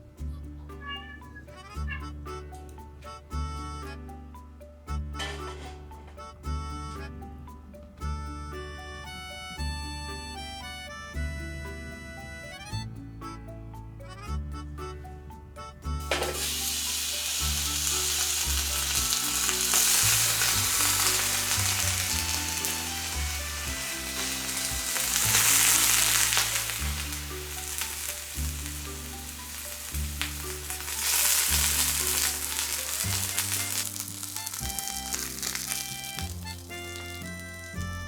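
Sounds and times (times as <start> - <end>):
background music: 0.0 - 38.0
food sizzling in a pan: 16.1 - 37.9.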